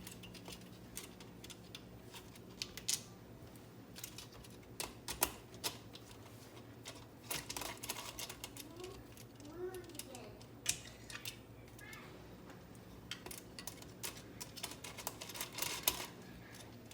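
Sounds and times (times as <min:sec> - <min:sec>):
faint steady hum: 0:00.0 - 0:16.9
plastic parts clicking and tapping: 0:04.0 - 0:12.0, 0:13.0 - 0:16.9.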